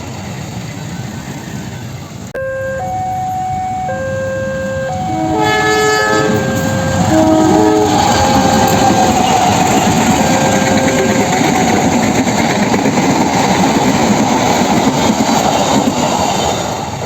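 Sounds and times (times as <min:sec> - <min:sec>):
train rumble: 0:00.0 - 0:17.0
level crossing warning siren: 0:02.4 - 0:12.3.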